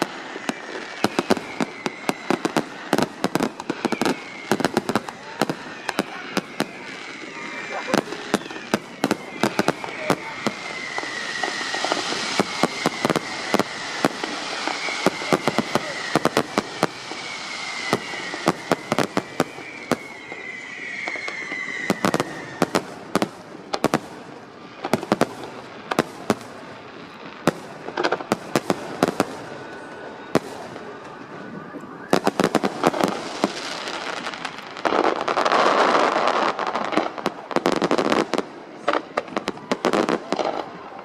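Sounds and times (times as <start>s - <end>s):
high falling whistle: 0.0s - 22.8s, 29.4s - 34.3s
fireworks bangs and crackles: 0.0s - 41.0s.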